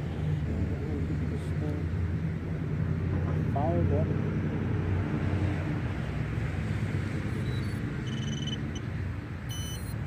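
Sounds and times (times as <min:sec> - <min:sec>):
high electronic beeps: 0:07.3 - 0:08.9, 0:09.5 - 0:10.0.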